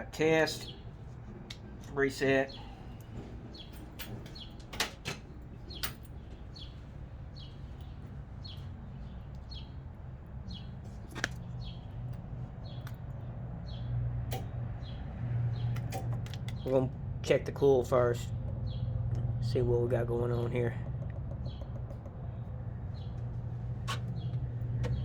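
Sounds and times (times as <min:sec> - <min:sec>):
bird chirping: 0:02.3 - 0:04.7, 0:05.6 - 0:14.0, 0:20.2 - 0:25.0.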